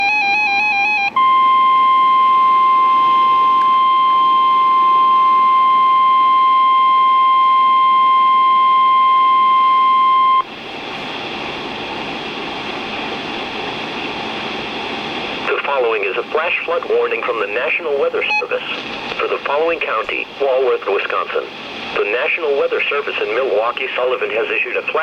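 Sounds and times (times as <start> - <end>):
radio static hiss: 9.9 - 25.0.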